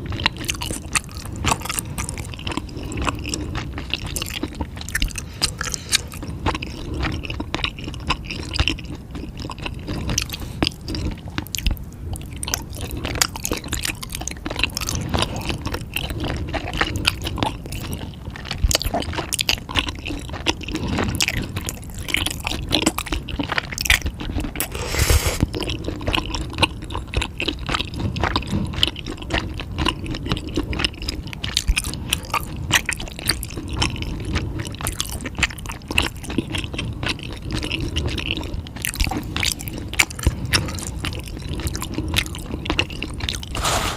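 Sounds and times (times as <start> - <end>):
wet chewing sounds: 0.0 - 43.6
crunchy clicks of food bitten: 25.4 - 43.6.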